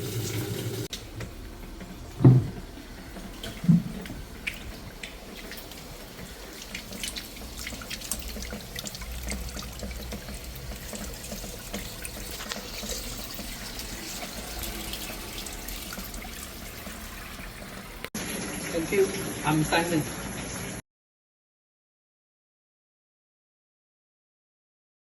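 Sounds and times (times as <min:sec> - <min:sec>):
water dripping: 0:02.8 - 0:19.7.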